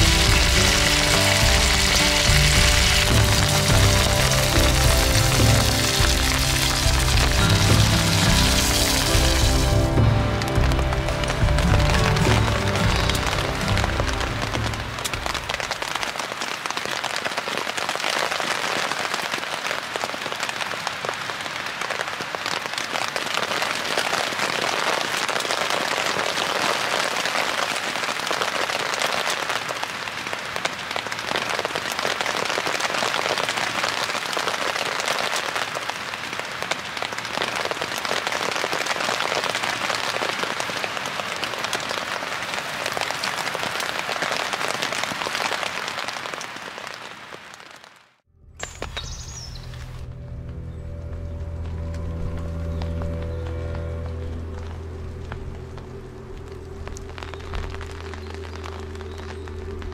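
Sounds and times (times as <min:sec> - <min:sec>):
rain pattering on a tarp: 0:00.0 - 0:59.9.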